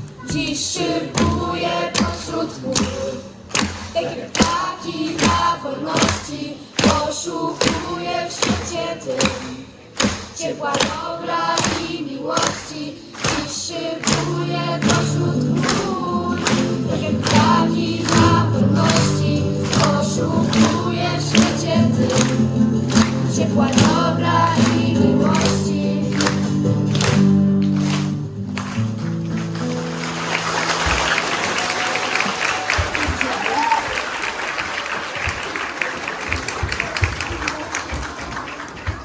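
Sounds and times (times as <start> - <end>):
group singing in chorus: 0.0 - 28.4
rhythmic strummed accompaniment: 0.0 - 31.6.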